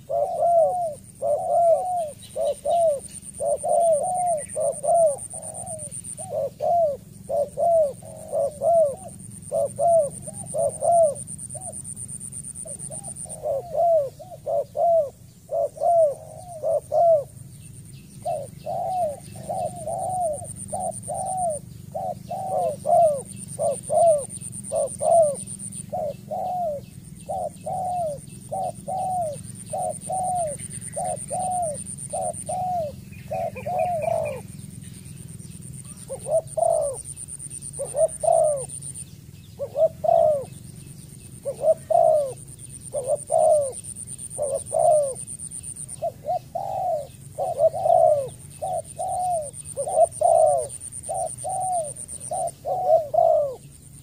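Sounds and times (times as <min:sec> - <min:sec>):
dove cooing: 0:00.0 - 0:54.0.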